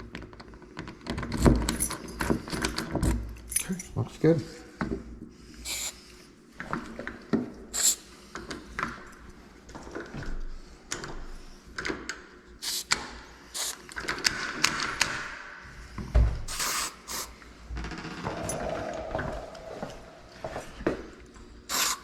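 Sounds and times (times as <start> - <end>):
short hiss: 5.7 - 6.0.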